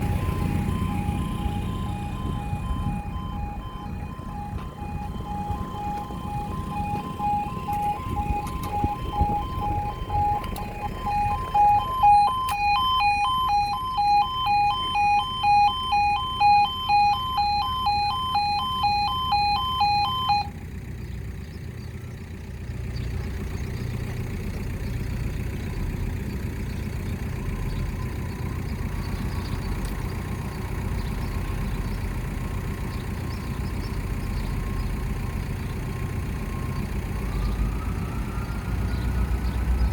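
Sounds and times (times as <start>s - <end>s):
level crossing alarm warble: 0.0s - 20.6s
low engine rumble: 0.0s - 39.9s.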